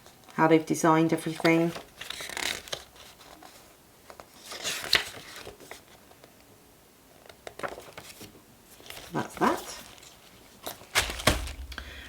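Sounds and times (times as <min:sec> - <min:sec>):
paper rustling: 0:01.3 - 0:06.0, 0:07.5 - 0:12.0.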